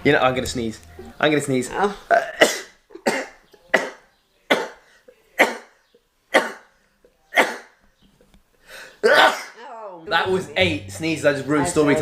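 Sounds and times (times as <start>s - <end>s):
man sneezing: 9.0s - 9.6s.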